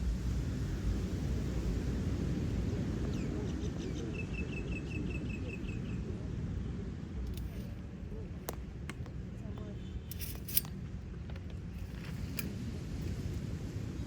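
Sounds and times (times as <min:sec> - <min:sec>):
ocean surf rumble: 0:00.0 - 0:07.2, 0:12.6 - 0:14.0
wind: 0:00.0 - 0:14.0.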